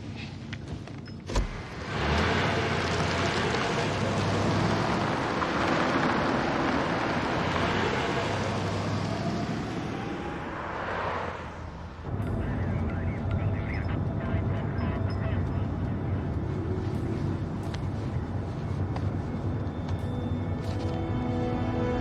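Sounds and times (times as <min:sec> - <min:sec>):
car engine and road noise: 0:00.0 - 0:22.0.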